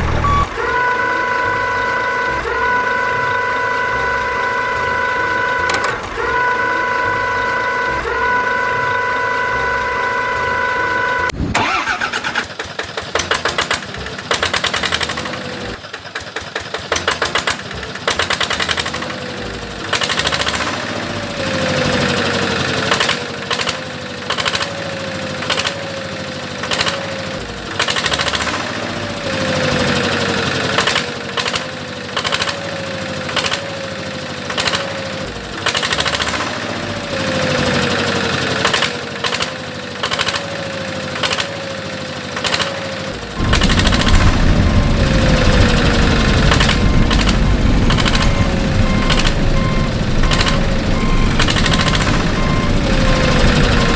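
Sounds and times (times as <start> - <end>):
short falling tone: 0.0 - 3.2, 43.4 - 53.9
stop-start engine with knocks: 11.5 - 53.9
motor whine: 43.4 - 53.9.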